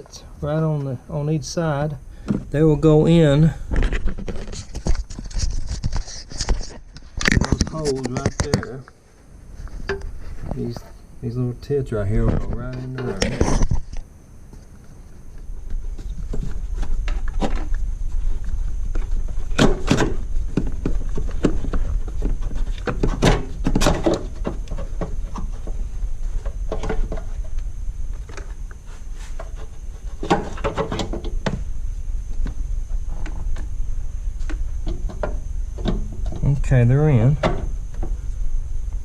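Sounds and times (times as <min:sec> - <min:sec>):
steady low rumble: 0:14.1 - 0:30.2, 0:31.1 - 0:39.0.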